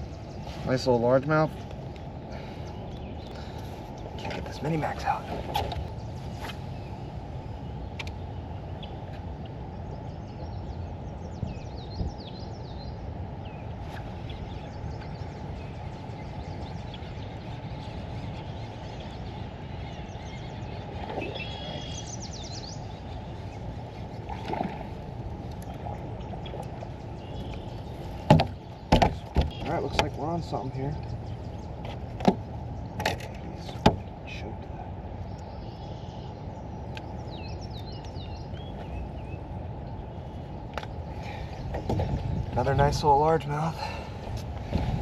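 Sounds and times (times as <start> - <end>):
small birds chirping: 0.0 - 45.0.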